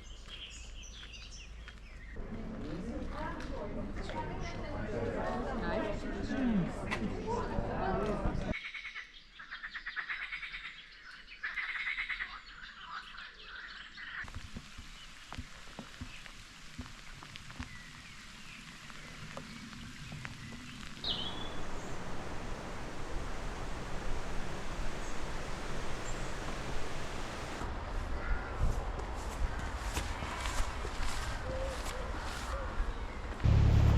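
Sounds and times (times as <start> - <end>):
faint hiss: 14.3 - 27.7
rapid pulsed animal call: 21.0 - 27.6
steady rushing noise: 21.0 - 27.8, 33.4 - 33.9.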